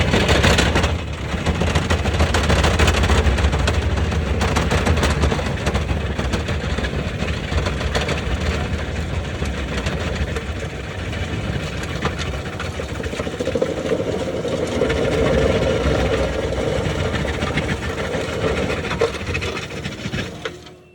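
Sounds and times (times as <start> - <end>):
road planer milling cracks: 0.0 - 20.6
skid steer engine under load: 0.0 - 20.9
humming tone: 20.1 - 20.9.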